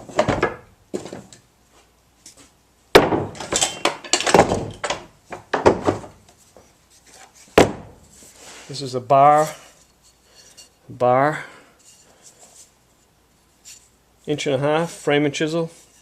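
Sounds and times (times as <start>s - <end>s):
metal tools knocking and clinking: 3.4s - 5.0s.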